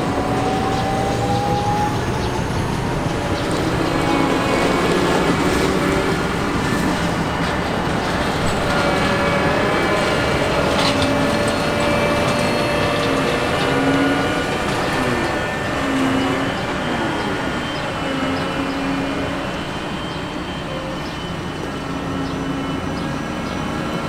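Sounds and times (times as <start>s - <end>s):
diesel engine drone: 0.0s - 24.0s
whining drive tones: 0.0s - 24.0s.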